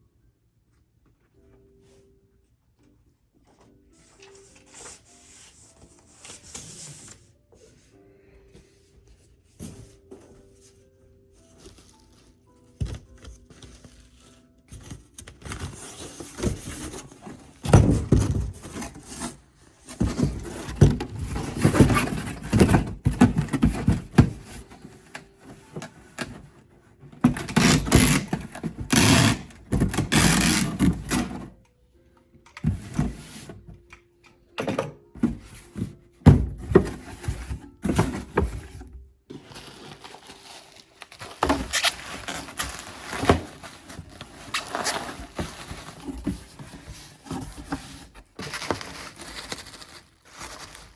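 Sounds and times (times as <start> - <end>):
rustling and scraping: 8.6 - 31.6, 32.6 - 33.8, 35.2 - 50.9.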